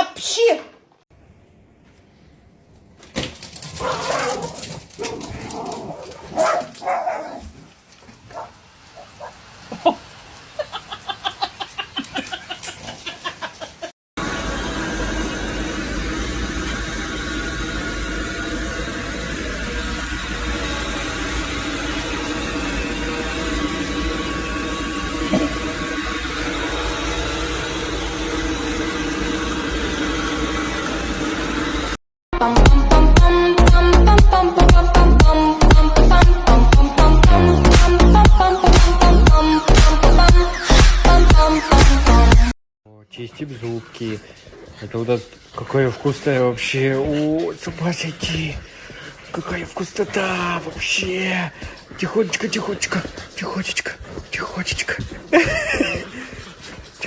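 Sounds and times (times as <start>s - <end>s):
dog barking and whimpering: 3.7s - 9.4s
machine hum with hiss: 14.2s - 32.0s.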